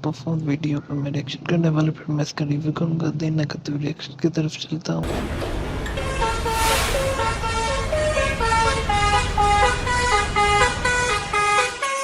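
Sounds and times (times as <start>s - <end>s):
low rumble: 5.0s - 10.1s
honking horn-like melody: 5.9s - 12.0s.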